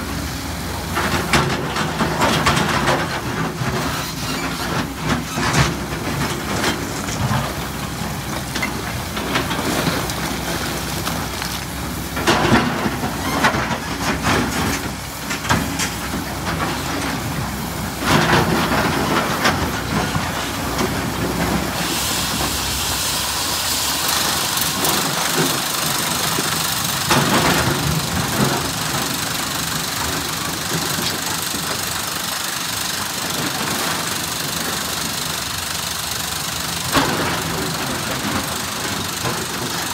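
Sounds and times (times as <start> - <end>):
excavator diesel engine under load: 0.0 - 39.9
hydraulic hiss: 21.6 - 26.8.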